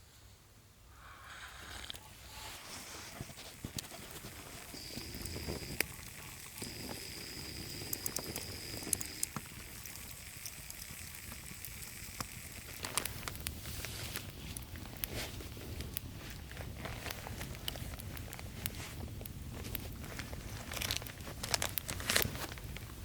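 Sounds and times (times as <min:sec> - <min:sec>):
campfire crackling and popping: 0:01.6 - 0:23.0.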